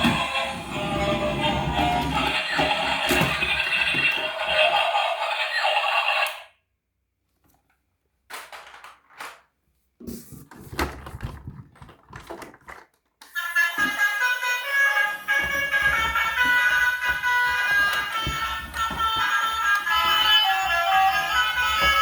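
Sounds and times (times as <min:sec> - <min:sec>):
background music: 0:00.0 - 0:03.6, 0:13.4 - 0:22.0.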